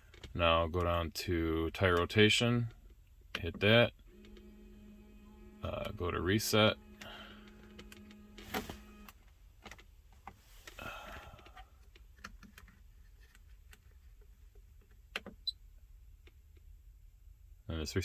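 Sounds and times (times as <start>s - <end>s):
dashboard button clicks: 5.7s - 9.8s
light handling noises: 6.9s - 15.4s.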